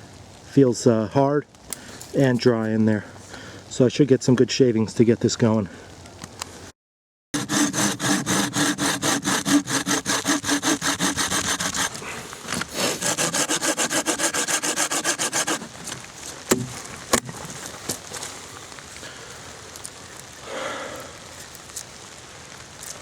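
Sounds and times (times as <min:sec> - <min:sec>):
hand saw cutting wood: 0:07.4 - 0:16.6.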